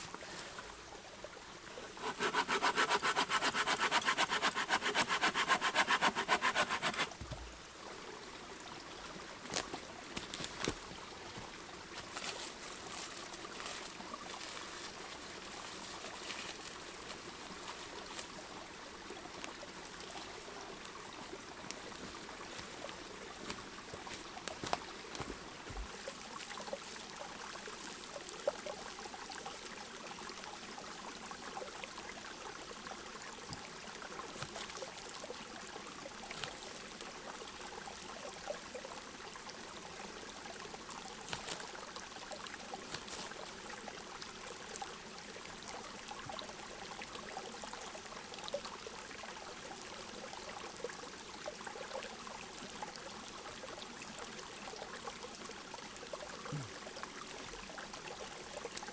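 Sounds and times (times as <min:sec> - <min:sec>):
rhythmic rasping strokes: 0:02.0 - 0:07.2.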